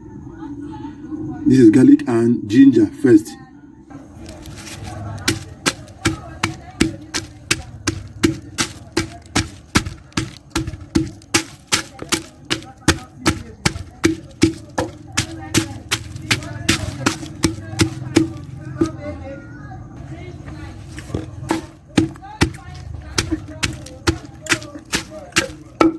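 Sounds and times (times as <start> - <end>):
pestle pounding in mortar: 4.2 - 19.0, 20.7 - 25.9.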